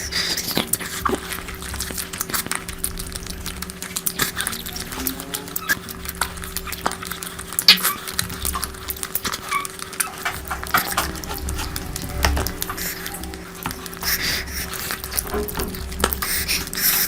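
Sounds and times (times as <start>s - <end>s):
steady low hum: 0.0s - 17.0s
wet chewing and lip smacks: 5.6s - 10.3s.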